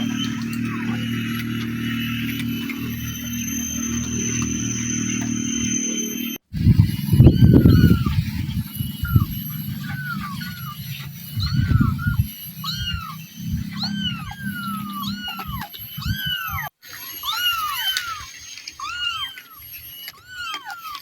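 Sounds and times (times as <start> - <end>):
low rumble: 0.0 - 16.2
kitten mewing: 6.8 - 18.2.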